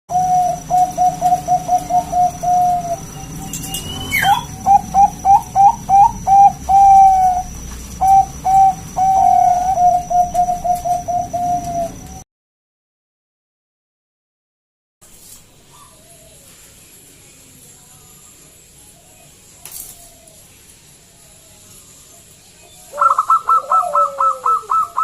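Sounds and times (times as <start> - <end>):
dove cooing: 0.1 - 12.2, 22.8 - 25.0
brief rising whistle: 3.5 - 4.5.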